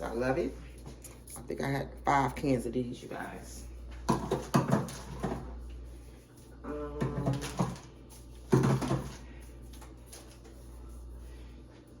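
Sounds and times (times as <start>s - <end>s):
canned goods knocking: 4.1s - 5.4s, 8.5s - 9.2s.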